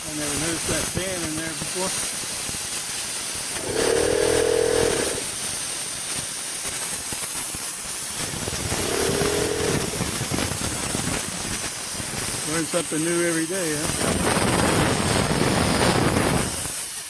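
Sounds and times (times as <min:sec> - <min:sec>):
compressor air hiss: 0:00.0 - 0:17.0
short humming tone: 0:03.6 - 0:05.3, 0:08.7 - 0:10.1.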